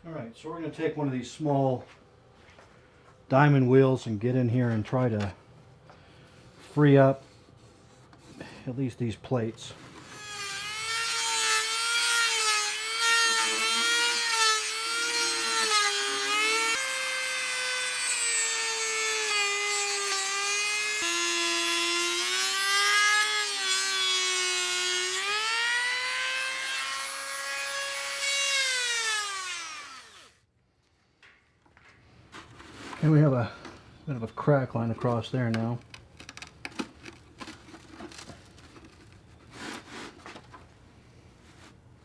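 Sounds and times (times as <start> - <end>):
rotary tool grinding: 9.9 - 30.3.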